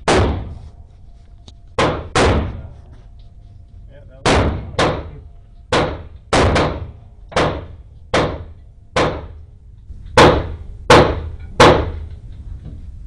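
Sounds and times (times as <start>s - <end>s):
pistol shots: 1.8s - 2.6s, 4.2s - 5.1s, 5.7s - 9.4s.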